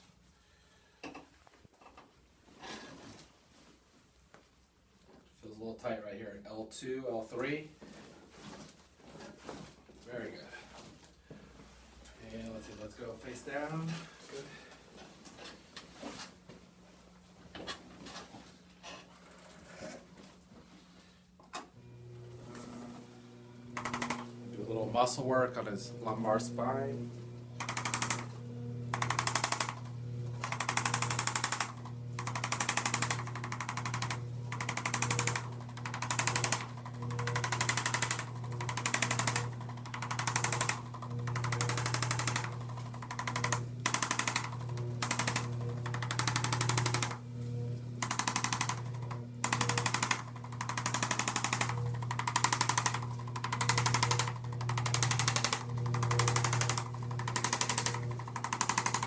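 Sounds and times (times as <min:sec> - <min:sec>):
percussion massager hammering: 0:27.6 - 0:28.2, 0:28.9 - 0:29.8, 0:30.4 - 0:47.2, 0:48.0 - 0:59.0.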